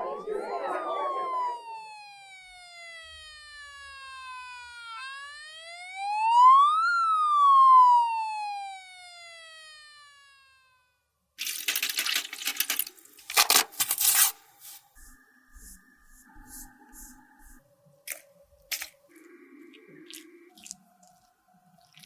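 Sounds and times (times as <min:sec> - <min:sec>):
siren-like tone gliding: 0:00.0 - 0:10.9.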